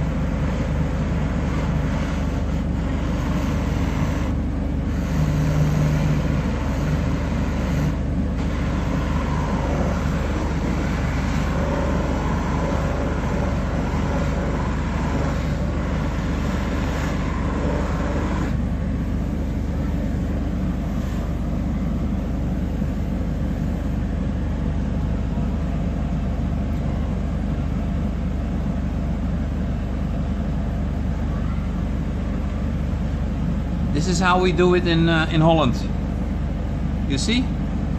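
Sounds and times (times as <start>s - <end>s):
electric motor droning: 0.0s - 24.0s.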